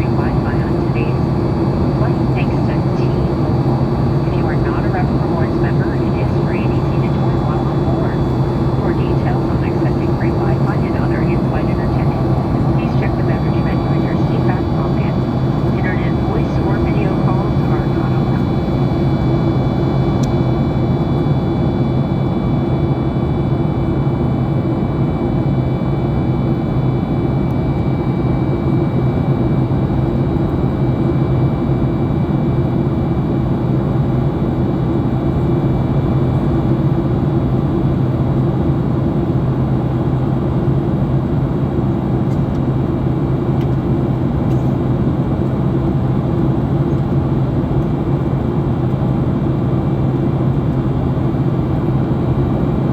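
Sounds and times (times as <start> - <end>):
airplane cabin drone: 0.0 - 52.9.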